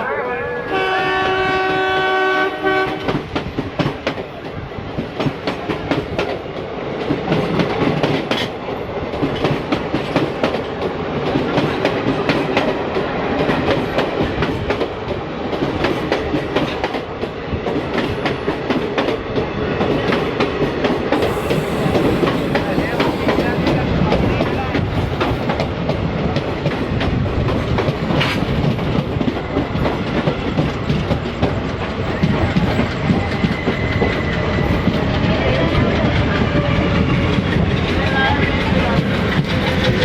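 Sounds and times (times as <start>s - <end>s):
moving train rumble: 0.0s - 40.0s
locomotive horn blast: 0.2s - 3.2s.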